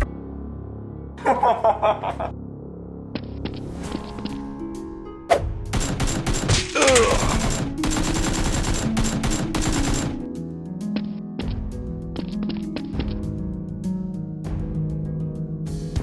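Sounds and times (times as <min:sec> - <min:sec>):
background music: 0:00.0 - 0:16.0
rapid automatic gunfire: 0:05.7 - 0:10.3.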